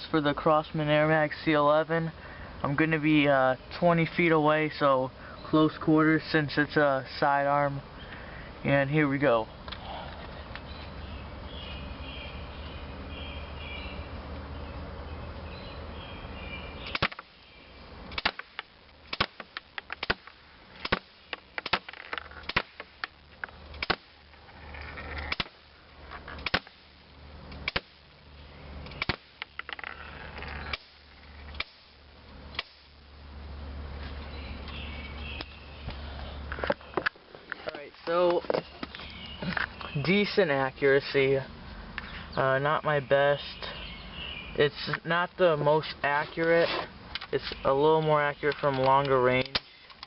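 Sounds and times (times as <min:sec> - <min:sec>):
low background hum: 0:00.0 - 0:50.0
airsoft pistol shots: 0:16.9 - 0:17.3, 0:18.1 - 0:23.1, 0:26.4 - 0:26.9, 0:27.6 - 0:28.0, 0:29.0 - 0:29.4.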